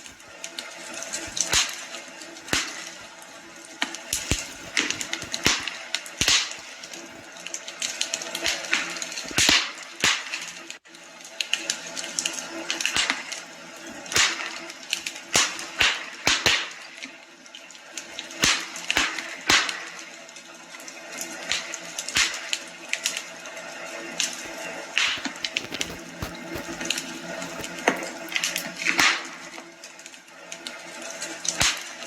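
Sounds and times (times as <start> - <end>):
fire pops and snaps: 0.0 - 3.2, 3.8 - 10.5, 12.9 - 13.4, 14.1 - 16.7, 24.4 - 29.2
wood fire crackling: 0.0 - 10.6, 24.2 - 29.2.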